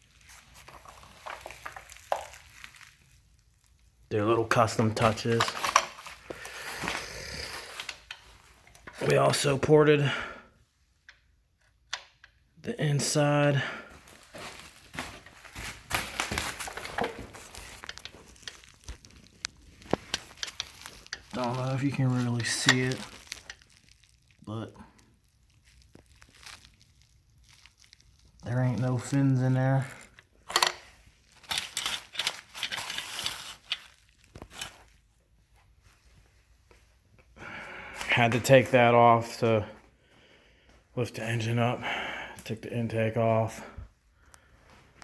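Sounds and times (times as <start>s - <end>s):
rustling: 0.0s - 3.8s, 13.8s - 37.0s.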